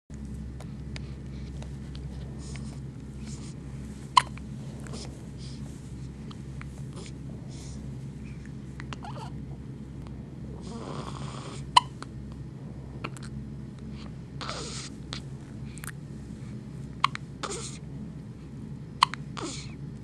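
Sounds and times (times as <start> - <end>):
baby hiccuping: 19.0 - 19.6.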